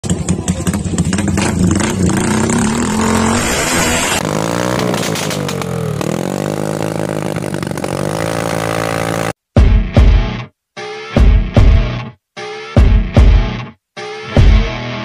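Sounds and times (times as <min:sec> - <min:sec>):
motorcycle engine revving: 0:00.0 - 0:09.4.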